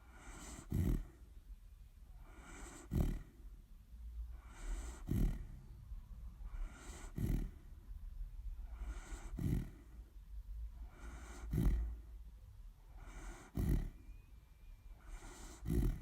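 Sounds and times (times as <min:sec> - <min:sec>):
dog snoring: 0:00.0 - 0:01.4, 0:02.1 - 0:03.5, 0:04.3 - 0:05.7, 0:06.4 - 0:07.8, 0:08.6 - 0:10.1, 0:10.8 - 0:12.2, 0:12.8 - 0:14.3, 0:14.9 - 0:16.0
breathy hiss: 0:15.0 - 0:16.0.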